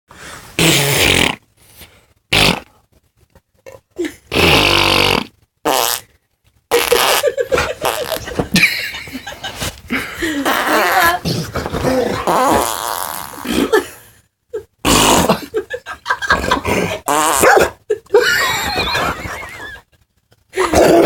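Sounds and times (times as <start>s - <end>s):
person making fart noises: 0.6s - 1.5s, 2.3s - 2.9s, 4.3s - 8.6s, 10.4s - 13.8s, 14.8s - 15.5s, 16.4s - 17.6s, 20.6s - 21.0s.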